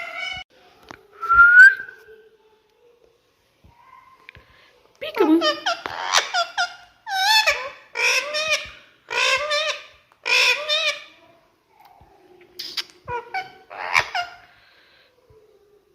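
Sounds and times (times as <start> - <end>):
parrot squawking: 5.4 - 11.1, 12.6 - 14.4.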